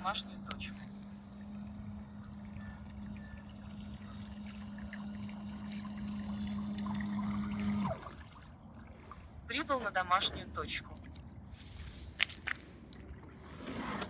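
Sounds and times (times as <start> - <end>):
electric propeller motor humming: 0.0 - 8.4
churning water: 0.0 - 14.0.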